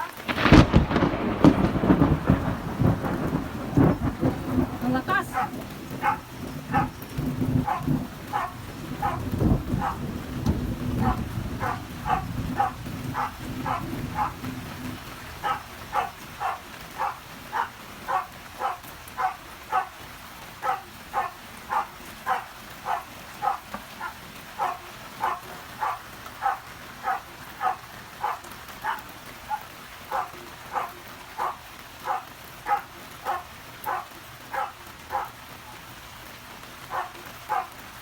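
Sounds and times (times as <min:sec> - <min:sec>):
faint rain hiss: 0:00.0 - 0:38.0
animal calling: 0:03.9 - 0:20.0, 0:20.6 - 0:35.4, 0:36.9 - 0:37.8.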